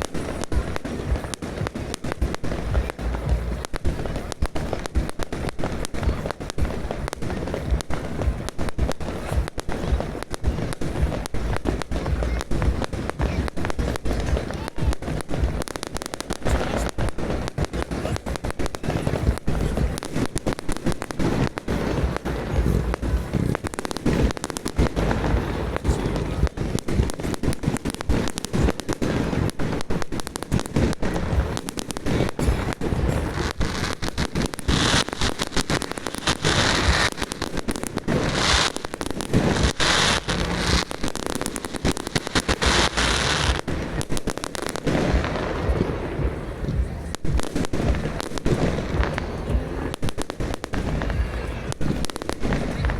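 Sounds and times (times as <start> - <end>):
fireworks cracks and bangs: 0.0 - 52.9.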